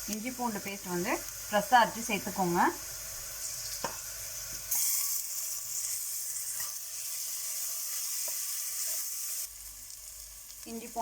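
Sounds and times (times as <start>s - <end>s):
onions sizzling in oil: 0.0s - 11.0s.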